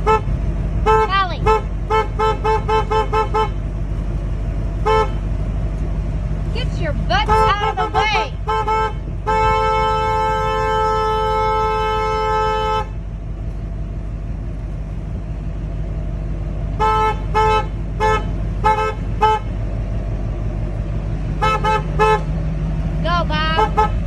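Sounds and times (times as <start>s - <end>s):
two-note truck horn: 0.0s - 3.8s, 4.8s - 5.5s, 6.6s - 13.1s, 16.7s - 19.8s, 21.3s - 22.4s, 23.0s - 24.0s
engine rumbling: 0.0s - 24.0s.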